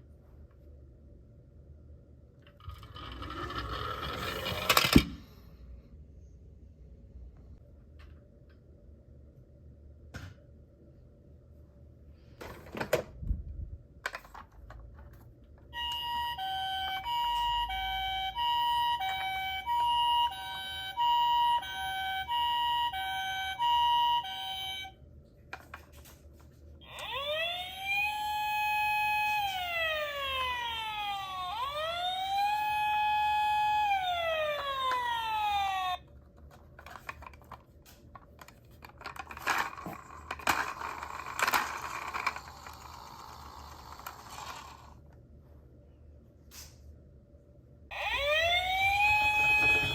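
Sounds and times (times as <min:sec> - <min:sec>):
plastic clicks and rattles: 0:14.0 - 0:15.3, 0:36.3 - 0:42.9
two-tone toy siren: 0:15.7 - 0:25.0, 0:26.8 - 0:36.1, 0:40.3 - 0:44.9, 0:47.9 - 0:49.9
wailing toy siren: 0:15.7 - 0:25.0, 0:26.8 - 0:36.1, 0:47.9 - 0:49.9.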